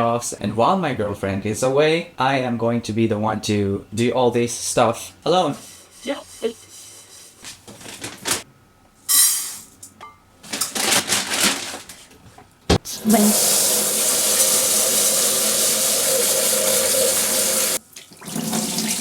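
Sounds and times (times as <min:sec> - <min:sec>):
rustling: 0:05.6 - 0:08.4, 0:10.4 - 0:12.4
kitchen tap running: 0:12.7 - 0:19.0.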